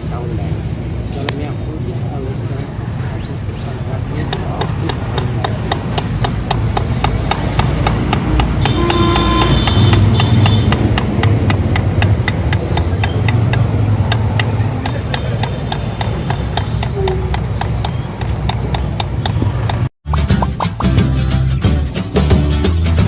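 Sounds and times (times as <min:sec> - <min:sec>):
rapid mechanical ticking: 0:04.2 - 0:20.8.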